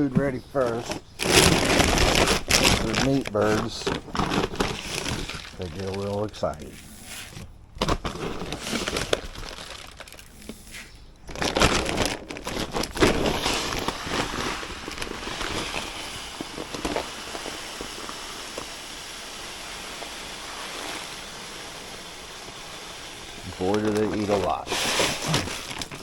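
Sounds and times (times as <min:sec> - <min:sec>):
chickens rustling while eating: 0:00.0 - 0:19.0
chicken feed being poured: 0:04.8 - 0:07.4, 0:09.5 - 0:11.0, 0:13.1 - 0:26.0.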